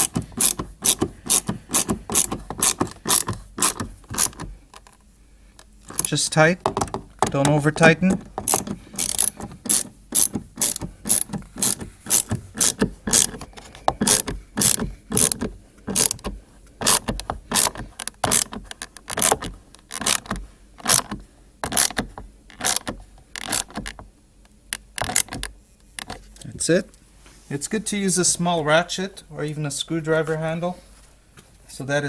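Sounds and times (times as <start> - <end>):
hand ratchet clicking: 0.0 - 4.9, 5.9 - 24.0, 24.7 - 26.2.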